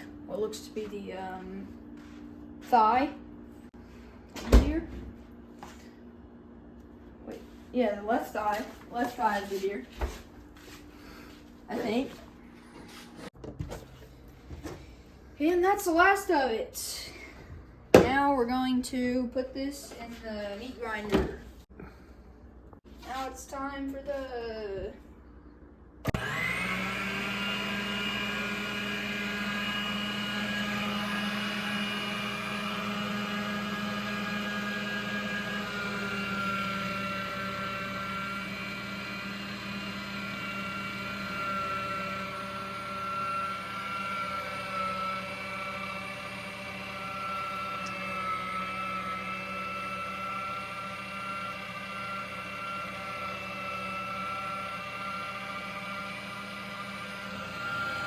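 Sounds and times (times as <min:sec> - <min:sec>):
electric meat grinder motor: 0:26.1 - 0:58.0.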